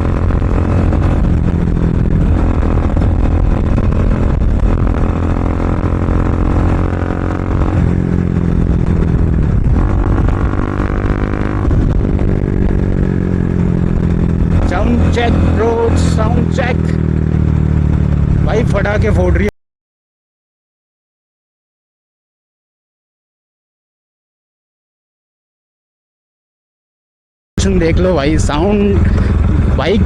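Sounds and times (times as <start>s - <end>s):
loud motorcycle engine exhaust: 0.0s - 19.5s, 27.6s - 30.0s.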